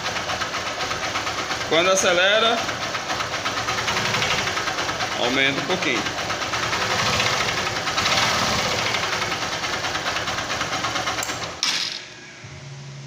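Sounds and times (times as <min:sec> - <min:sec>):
motorcycle engine with metallic knock: 0:06.6 - 0:12.1.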